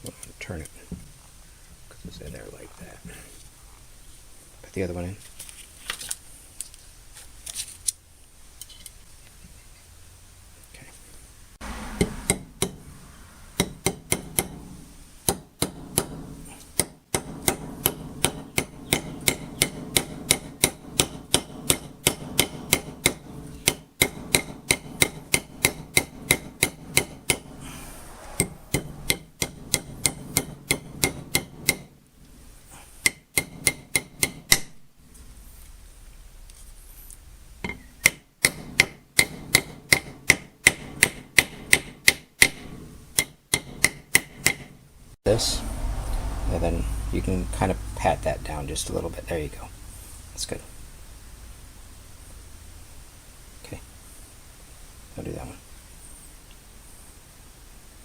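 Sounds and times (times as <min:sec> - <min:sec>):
hammer tapping on metal: 0:12.0 - 0:12.8, 0:13.6 - 0:27.5, 0:28.7 - 0:31.9, 0:33.0 - 0:34.8, 0:37.6 - 0:44.8.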